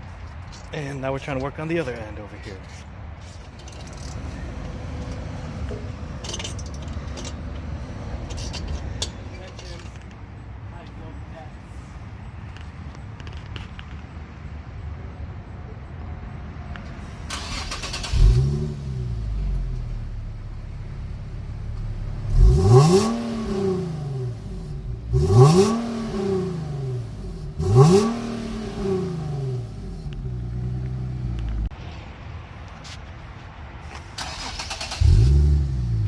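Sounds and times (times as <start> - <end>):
car engine idling and revving: 3.4 - 10.6, 16.2 - 31.8, 34.2 - 36.0.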